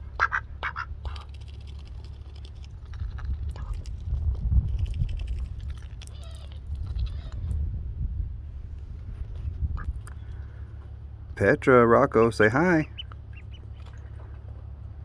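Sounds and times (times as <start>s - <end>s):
low rumble: 0.0s - 15.0s
duck quacking: 0.1s - 1.2s, 11.7s - 14.0s.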